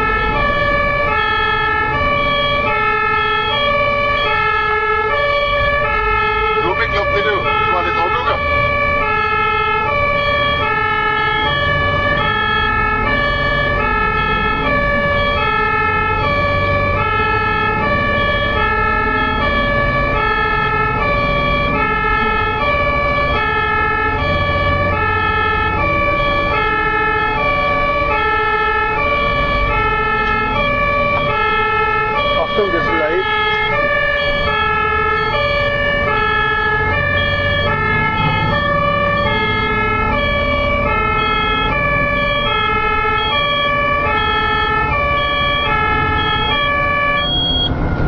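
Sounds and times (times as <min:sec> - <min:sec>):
low rumble of vehicle engines: 0:00.0 - 0:48.0
two-tone ambulance siren: 0:00.0 - 0:48.0.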